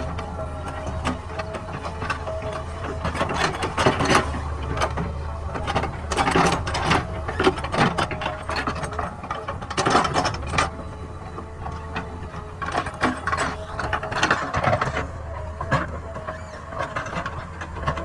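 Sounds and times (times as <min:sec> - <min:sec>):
diesel engine running: 0:00.0 - 0:18.0.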